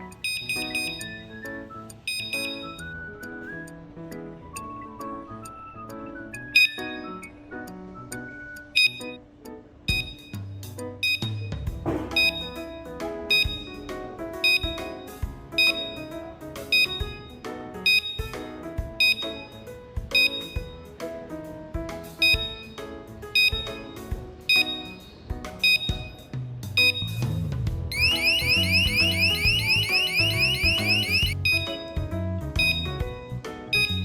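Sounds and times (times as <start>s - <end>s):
melody over steady beat: 11.0s - 15.0s, 27.9s - 32.0s
bright chime-like accent: 27.9s - 31.8s.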